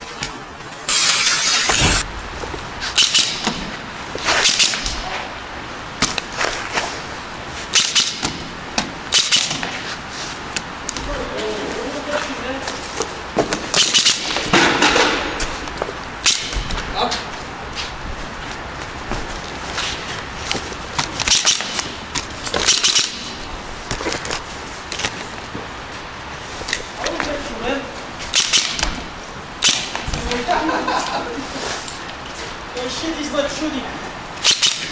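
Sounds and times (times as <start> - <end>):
airsoft gun shots: 1.7 - 3.8
loud rushing burst: 1.7 - 4.2.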